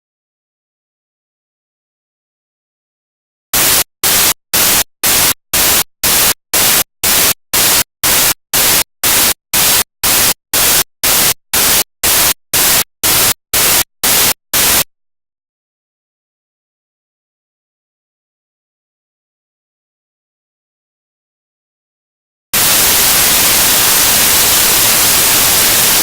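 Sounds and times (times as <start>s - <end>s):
pulsing static hiss: 3.6s - 14.8s, 22.6s - 26.0s.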